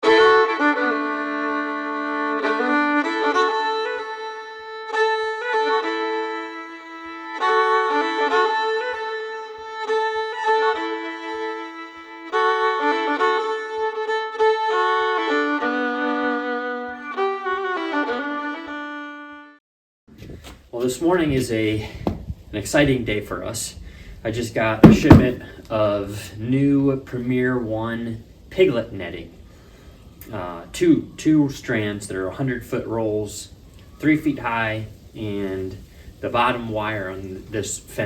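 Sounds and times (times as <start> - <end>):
fiddle tune: 0.0 - 19.6
light steady beat: 24.8 - 25.4.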